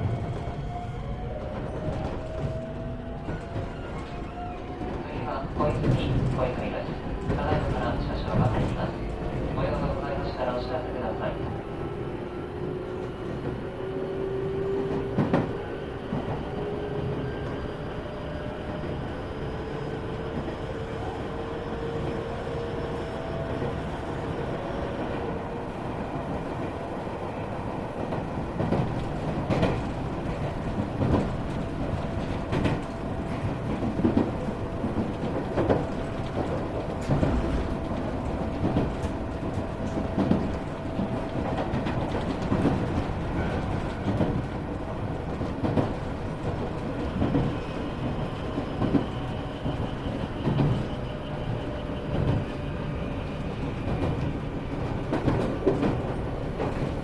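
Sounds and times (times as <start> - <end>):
train rumble with rising whine: 0.0 - 57.0.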